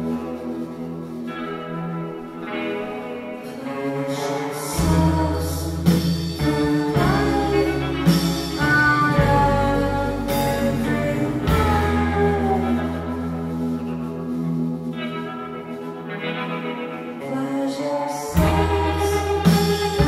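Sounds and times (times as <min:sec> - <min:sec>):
live rock band playing: 0:00.0 - 0:20.0
person singing: 0:00.0 - 0:20.0
heavy low bass: 0:04.8 - 0:15.0, 0:18.4 - 0:20.0.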